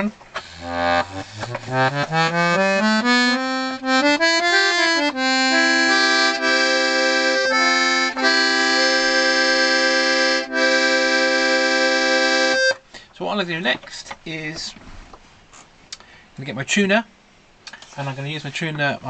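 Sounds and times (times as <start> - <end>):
accordion bass notes: 0.0 - 12.8.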